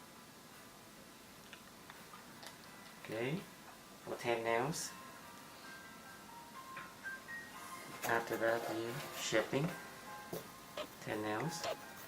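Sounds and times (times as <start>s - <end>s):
faint slow high-note music: 4.5s - 8.0s, 9.6s - 12.0s.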